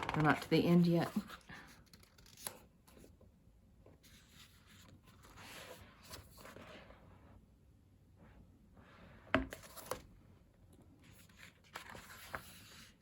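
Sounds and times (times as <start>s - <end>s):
book pages turning: 0.0s - 3.2s, 9.4s - 10.1s, 11.0s - 13.0s.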